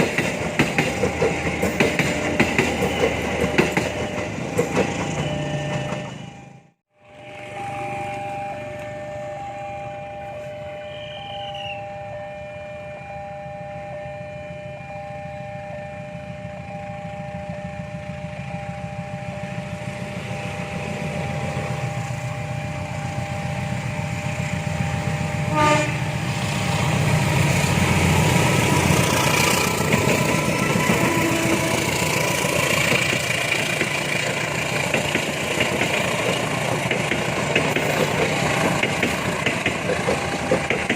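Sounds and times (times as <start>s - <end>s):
train rumbling past: 0.0s - 12.8s, 14.0s - 40.9s
two-tone crossing alarm: 0.0s - 40.9s
train horn blast: 22.3s - 26.5s, 27.7s - 32.6s.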